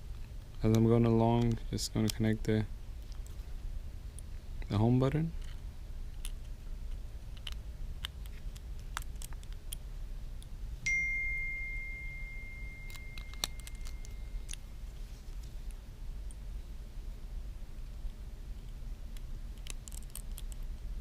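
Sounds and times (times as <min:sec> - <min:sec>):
high ringing tone: 0:10.8 - 0:14.6.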